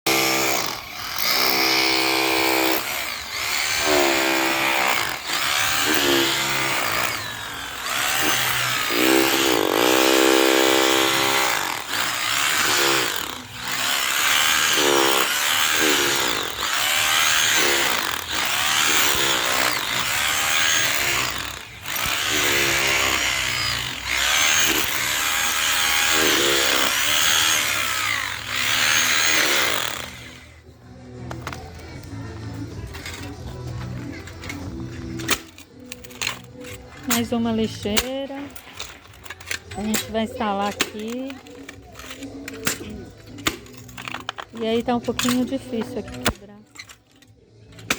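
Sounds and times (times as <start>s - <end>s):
electric drill into concrete: 0.1s - 30.6s.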